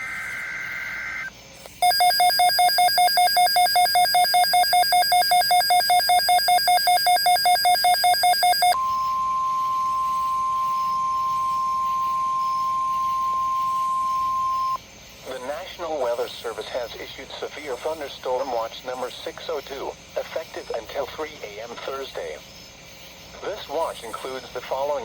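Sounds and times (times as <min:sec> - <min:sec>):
rapid electronic beeping: 0:00.0 - 0:08.8
steady warning alarm tone: 0:00.0 - 0:14.8
warbling data header: 0:00.0 - 0:14.8.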